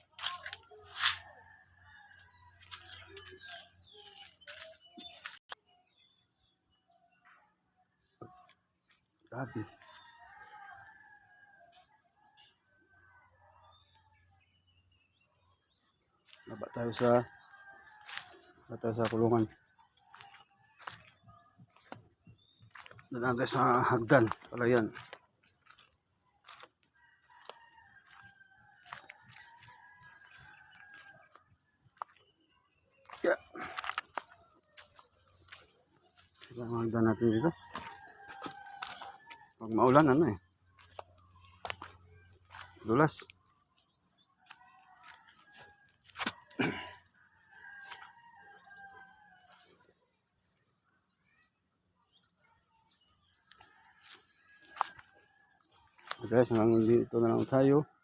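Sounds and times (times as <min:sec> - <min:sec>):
birds chirping: 0:00.0 - 0:58.0
rooster crowing: 0:27.1 - 0:31.4.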